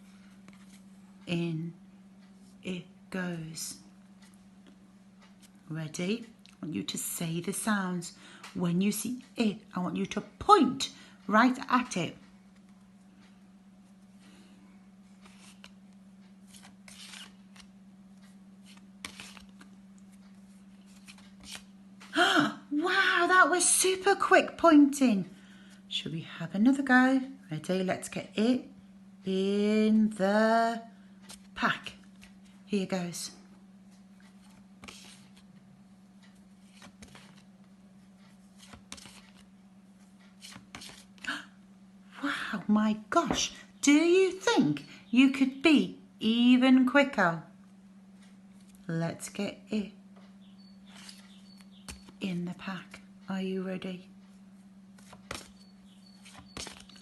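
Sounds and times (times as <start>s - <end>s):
low electrical hum: 0.0s - 57.0s
flashcards flipping: 15.1s - 22.1s, 33.9s - 35.5s, 36.2s - 37.5s, 38.2s - 41.3s, 50.9s - 52.2s, 55.0s - 55.6s, 56.2s - 57.0s.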